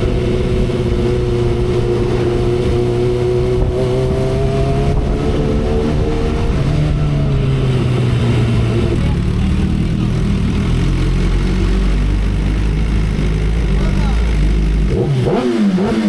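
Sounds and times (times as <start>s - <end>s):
wind noise: 0.0s - 9.3s
motorcycle engine running: 0.0s - 16.0s.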